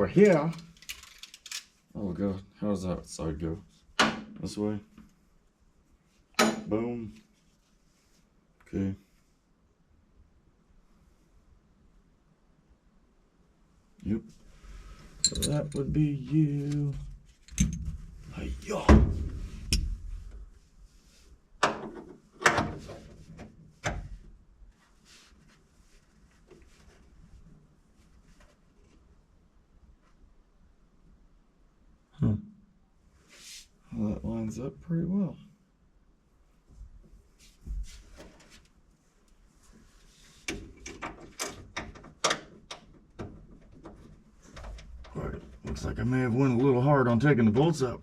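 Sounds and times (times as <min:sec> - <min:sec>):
faint handling noise: 0:00.1 - 0:01.9, 0:14.0 - 0:18.6, 0:22.0 - 0:30.3
metal clicks and knocks: 0:15.2 - 0:15.9.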